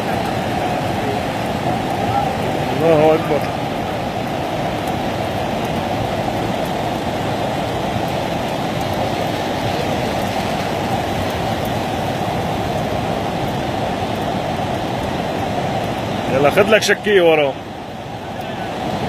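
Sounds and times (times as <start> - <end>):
floodwater rushing: 0.0 - 19.0.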